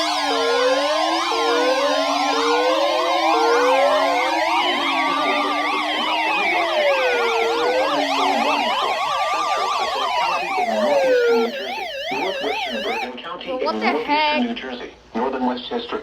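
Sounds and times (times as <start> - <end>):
electronic sirens wailing and yelping: 0.0 - 13.2
steady alarm tone: 0.0 - 13.2.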